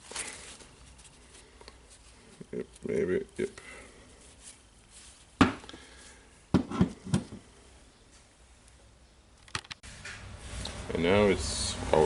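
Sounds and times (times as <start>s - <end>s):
drill parts knocking on workbench: 6.5s - 7.4s.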